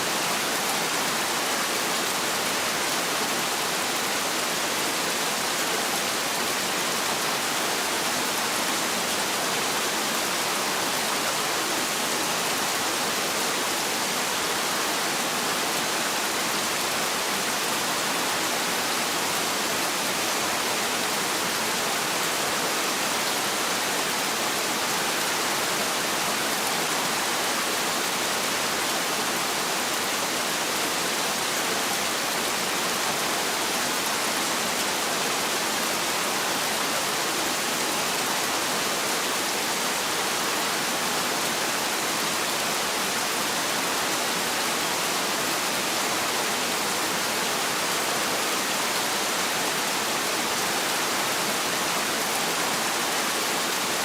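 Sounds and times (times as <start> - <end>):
heavy rain pouring: 0.0 - 54.0.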